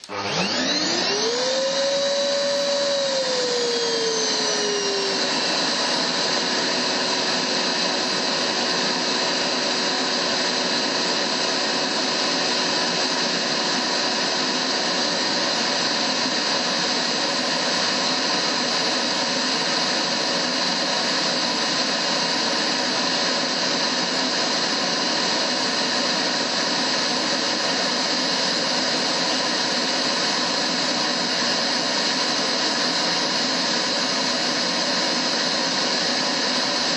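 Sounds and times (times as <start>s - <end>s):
vacuum cleaner running: 0.0s - 36.9s.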